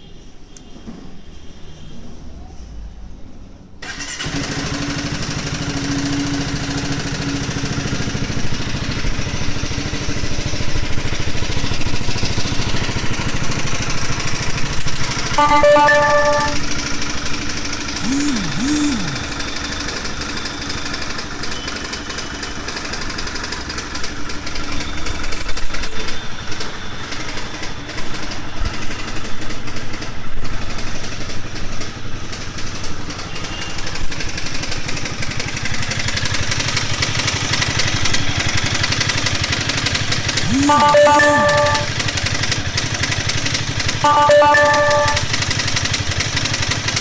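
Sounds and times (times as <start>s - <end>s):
motorcycle engine running: 3.8s - 19.6s.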